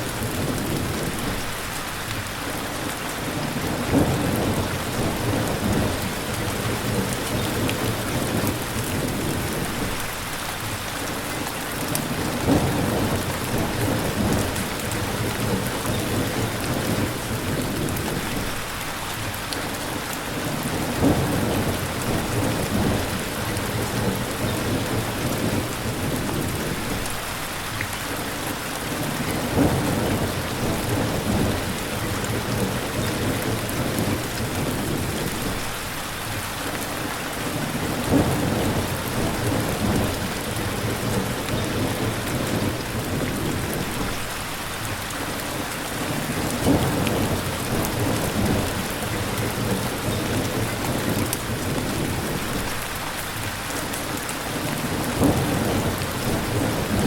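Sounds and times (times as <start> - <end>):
steady rain: 0.0 - 57.0
thunder rumbling: 37.8 - 44.3, 46.1 - 52.8, 54.9 - 57.0.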